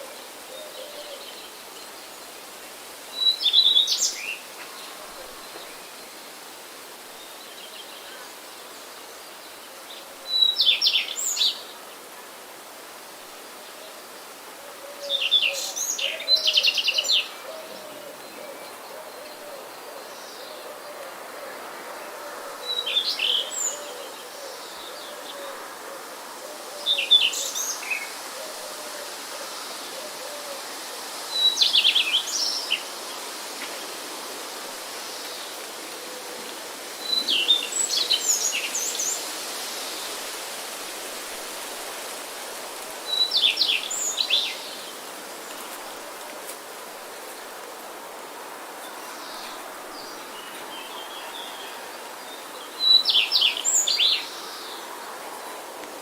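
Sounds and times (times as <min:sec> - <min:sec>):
background hiss: 0:00.0 - 0:56.0
songbird chirping: 0:43.0 - 0:56.0.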